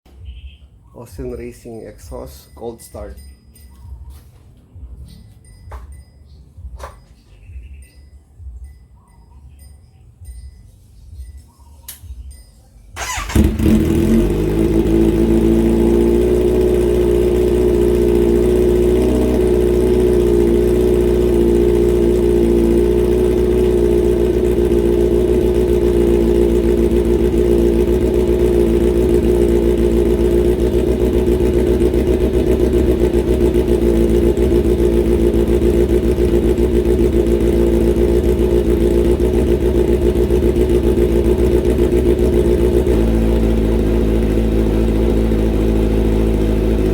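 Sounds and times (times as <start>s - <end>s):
motorcycle engine starting and idling: 10.3s - 46.9s.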